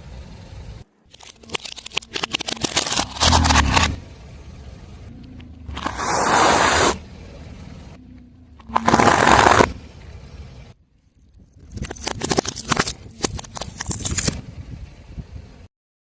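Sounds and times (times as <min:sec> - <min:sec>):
objects crushed under car tyre: 0:08.6 - 0:09.8.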